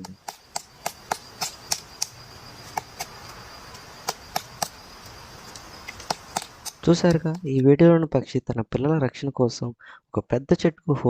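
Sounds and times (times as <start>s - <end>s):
woodpecker pecking tree trunk: 0.0s - 7.7s.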